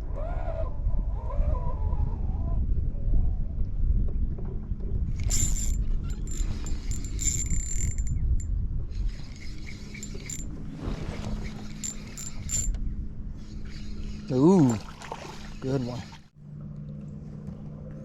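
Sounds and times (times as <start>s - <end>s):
low hum: 4.9s - 15.6s
fishing reel gears whirring: 5.1s - 8.2s, 8.9s - 10.6s, 11.2s - 12.8s, 13.4s - 16.2s.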